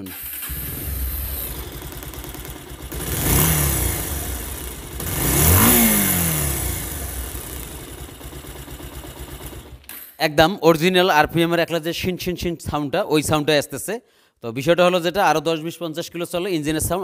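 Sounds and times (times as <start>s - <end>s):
motorcycle engine idling and revving: 0.2s - 9.9s.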